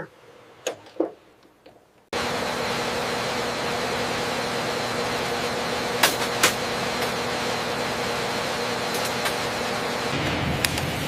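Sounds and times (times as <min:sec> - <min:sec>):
machine hiss and hum: 0:02.2 - 0:11.0.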